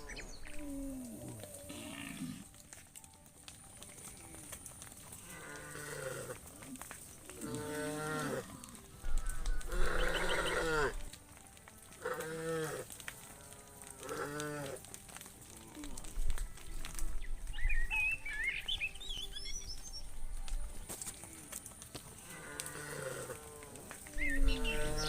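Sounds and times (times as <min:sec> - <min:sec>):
cattle mooing: 0:00.0 - 0:02.6, 0:05.2 - 0:06.6, 0:07.4 - 0:11.0, 0:22.2 - 0:25.0.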